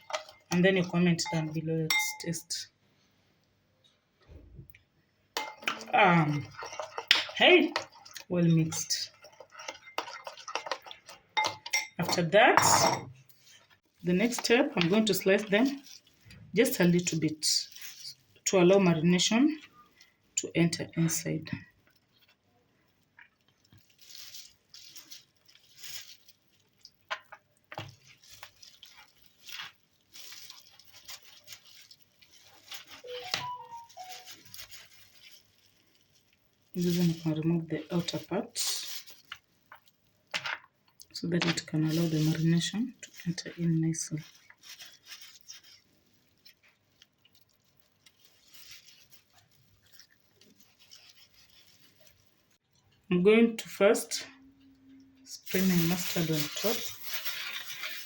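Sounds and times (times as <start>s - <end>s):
hands rustling and scraping meat: 13.2s - 20.4s, 21.7s - 53.0s, 55.4s - 58.0s.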